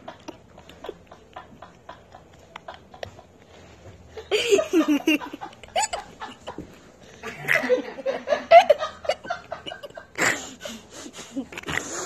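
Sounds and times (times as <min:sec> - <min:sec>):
person laughing in bursts: 0:04.2 - 0:11.7.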